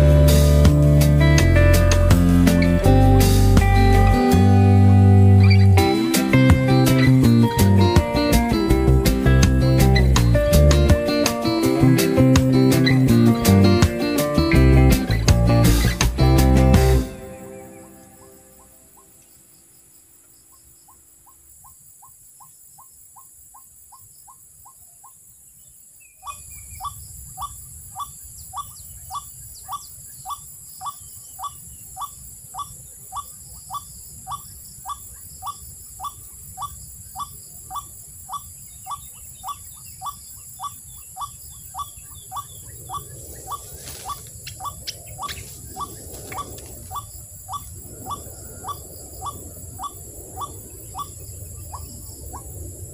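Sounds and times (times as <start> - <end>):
insects shrilling: 5.0 - 22.2, 26.0 - 52.9
rustling: 43.6 - 46.9.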